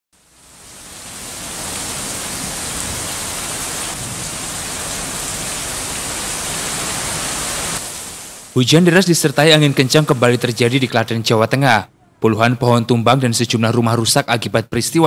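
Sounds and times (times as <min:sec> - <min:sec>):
heavy rain falling: 0:00.2 - 0:11.2.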